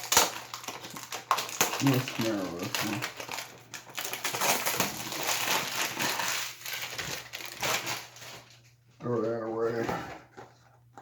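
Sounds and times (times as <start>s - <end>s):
packaging being torn open: 0.0s - 8.5s
plastic wrap crinkling: 0.0s - 9.8s.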